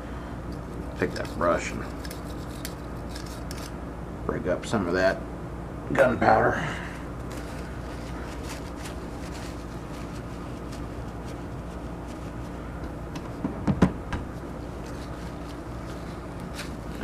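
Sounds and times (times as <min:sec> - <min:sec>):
brush scrubbing metal: 0:07.3 - 0:12.6
sharp knocks: 0:13.2 - 0:14.3.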